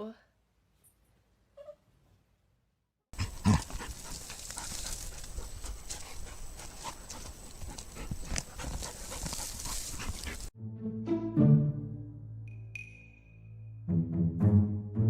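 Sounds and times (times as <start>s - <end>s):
dog panting: 3.2s - 10.5s.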